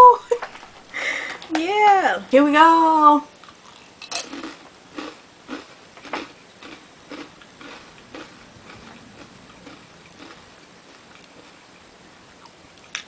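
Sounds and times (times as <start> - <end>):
chewing crunchy snack: 3.4 - 11.8.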